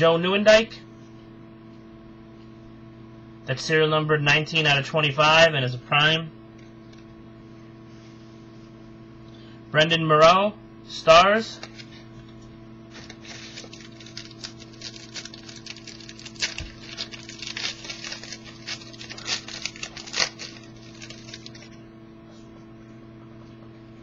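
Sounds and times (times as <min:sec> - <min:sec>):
steady electrical hum: 0:00.0 - 0:24.0
cards clicking and rustling: 0:13.0 - 0:21.7.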